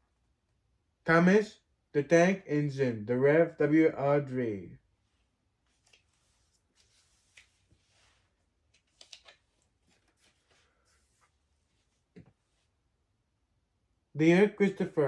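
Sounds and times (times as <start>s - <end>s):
book pages turning: 5.6s - 12.6s.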